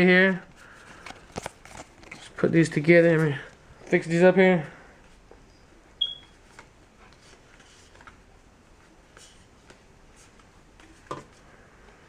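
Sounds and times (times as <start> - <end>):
short high beep: 6.0 - 6.3.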